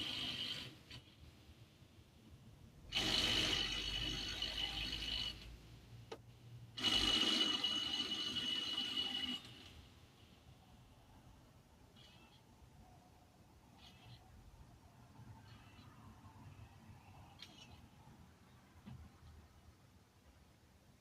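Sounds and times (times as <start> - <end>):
power tool whining: 2.9 - 5.5, 6.8 - 9.7.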